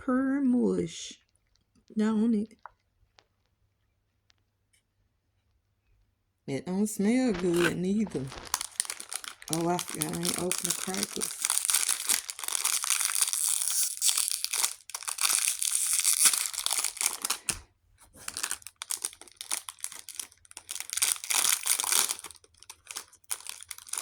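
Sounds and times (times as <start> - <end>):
cracker wrapper crinkling and tearing: 7.2 - 24.0.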